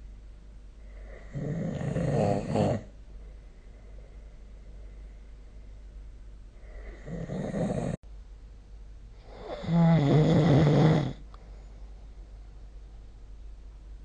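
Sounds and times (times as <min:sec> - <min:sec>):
person snoring: 0:00.9 - 0:02.9, 0:06.6 - 0:08.0, 0:09.2 - 0:11.3.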